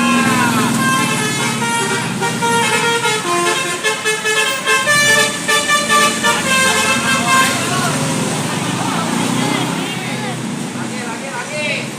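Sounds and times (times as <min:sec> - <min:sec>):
bus musical horn melody: 0:00.0 - 0:08.0.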